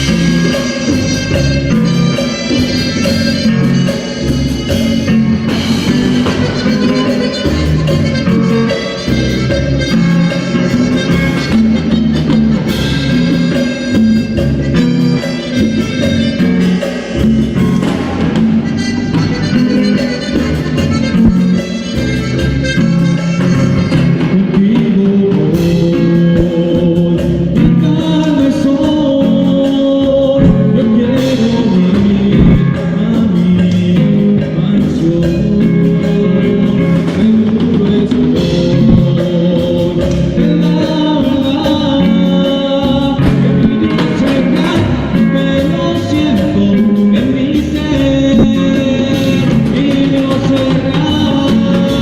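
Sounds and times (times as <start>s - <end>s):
drum kit: 0.0s - 52.0s
guitar: 0.0s - 52.0s
person singing: 22.7s - 52.0s.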